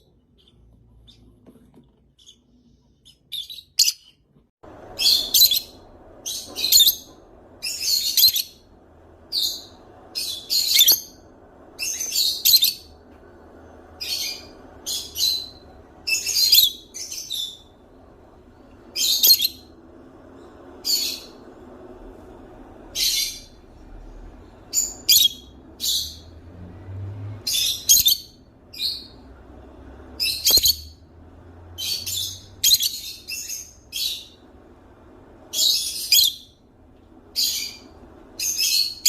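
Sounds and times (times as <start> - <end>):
parrot squawking: 5.0 - 8.6, 9.3 - 11.2, 14.0 - 17.7, 30.2 - 30.9.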